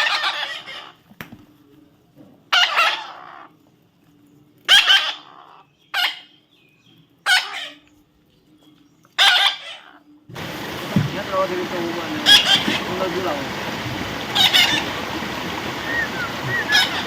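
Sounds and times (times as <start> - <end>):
parrot screeching: 0.0 - 1.0, 2.5 - 3.5, 4.7 - 6.3, 7.2 - 7.8, 9.2 - 10.0, 12.2 - 13.0, 14.3 - 15.0, 15.8 - 17.0
steady hiss: 10.3 - 17.0.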